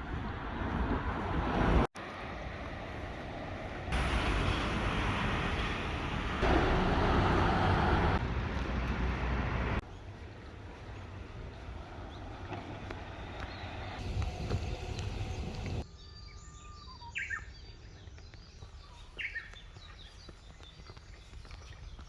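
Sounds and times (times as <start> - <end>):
rushing outdoor background noise: 0.0 - 15.9.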